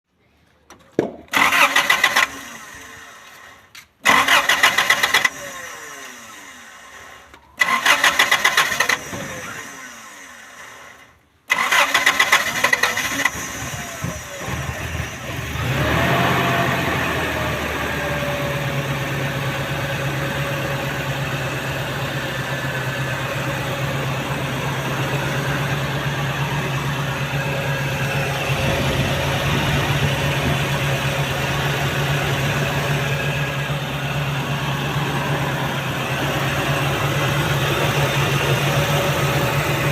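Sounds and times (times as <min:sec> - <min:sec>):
starter motor cranking: 0:01.3 - 0:14.9
car engine revving and idling: 0:01.4 - 0:39.9.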